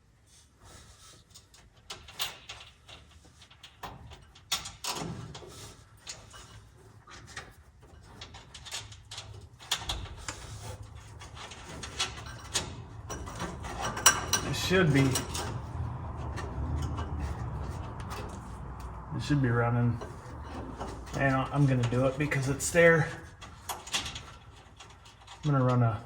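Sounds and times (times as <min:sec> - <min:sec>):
clicks and knocks of metal tools: 0:11.2 - 0:19.1.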